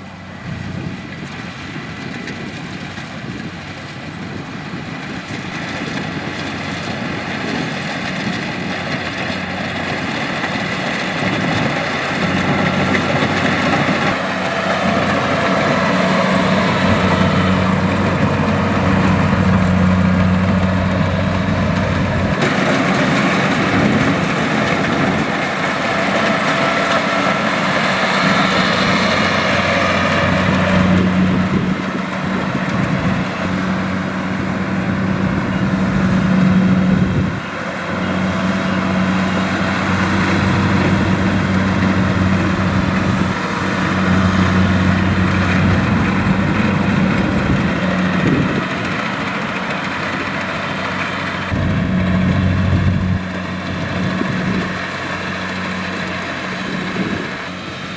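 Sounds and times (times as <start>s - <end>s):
combine harvester engine running: 0.0s - 57.9s
rushing noise: 5.4s - 57.9s.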